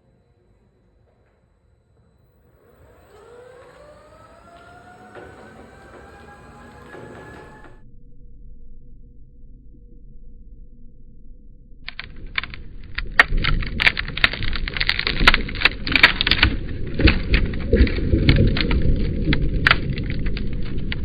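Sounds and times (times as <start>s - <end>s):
low rumble: 2.4s - 21.0s
dense crackling: 11.9s - 21.0s.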